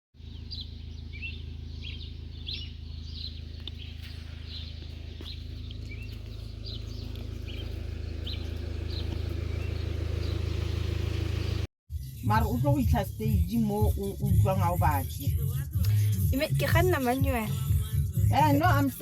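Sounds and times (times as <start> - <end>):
small birds chirping: 0.2 - 11.7
low hum: 0.2 - 16.3.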